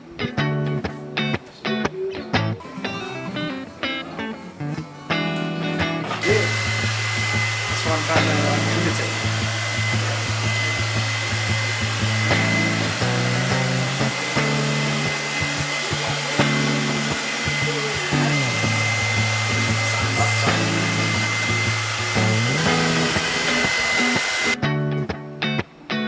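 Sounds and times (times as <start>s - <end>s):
hair dryer blowing: 5.4s - 24.6s.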